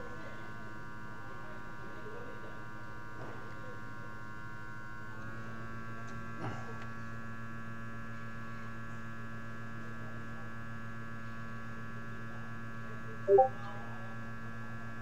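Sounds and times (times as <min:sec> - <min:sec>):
brief short sound: 0:13.3 - 0:13.5.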